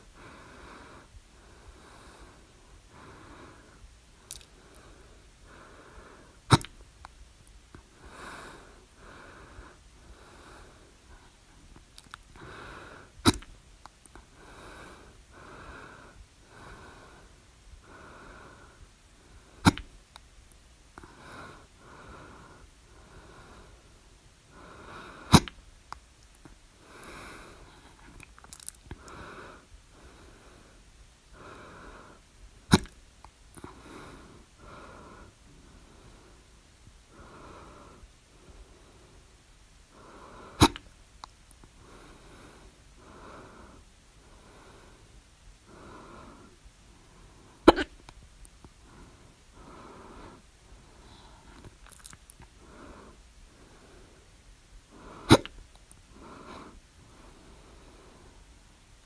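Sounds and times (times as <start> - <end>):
soft breathing: 0.0 - 59.0
person hiccuping: 47.7 - 48.0.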